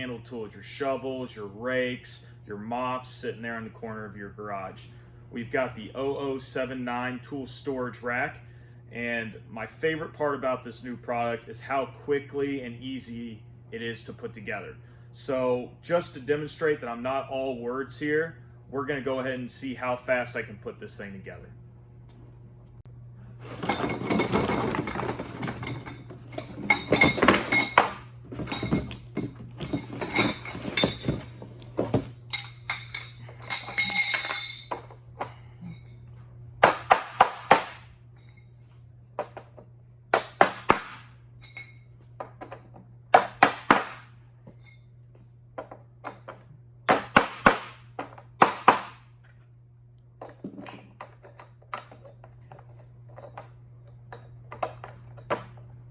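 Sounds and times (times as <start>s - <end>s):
storage rack parts rattling: 23.4s - 27.8s.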